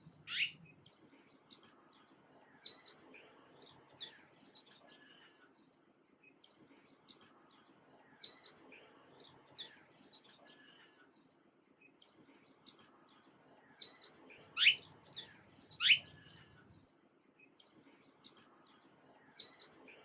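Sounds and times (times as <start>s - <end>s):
small birds chirping: 0.0s - 5.3s, 6.2s - 16.5s
loud quick rising bird calls: 0.3s - 0.5s.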